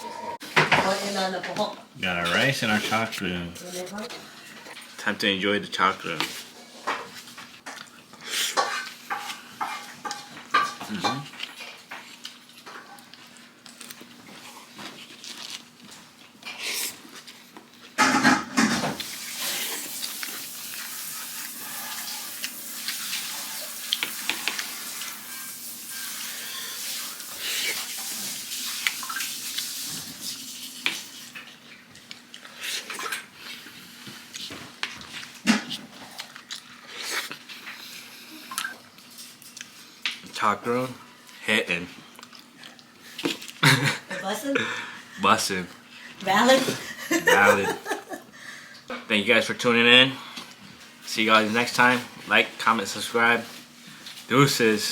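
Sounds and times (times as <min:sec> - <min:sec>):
cutlery clinking on a plate: 0:08.5 - 0:11.6.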